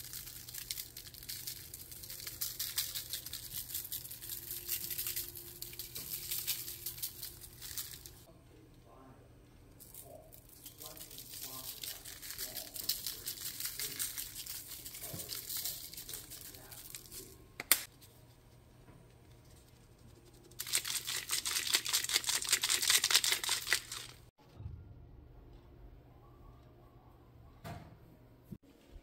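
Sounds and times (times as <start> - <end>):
fast crinkling and crackling: 0.0 - 8.3, 10.0 - 17.3, 20.2 - 24.3.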